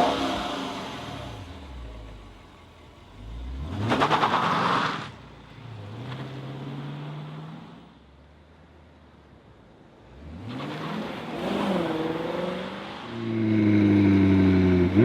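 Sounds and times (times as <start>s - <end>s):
sports car engine revving: 0.0s - 7.7s.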